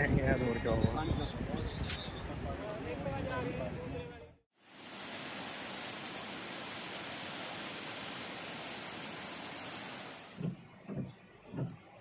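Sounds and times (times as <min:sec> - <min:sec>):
water hissing: 0:04.6 - 0:10.5.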